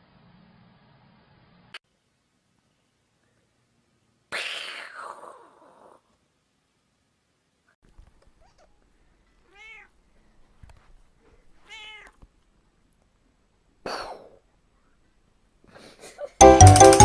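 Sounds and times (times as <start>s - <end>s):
cat meowing: 8.3s - 8.8s, 9.4s - 10.0s, 11.5s - 12.3s.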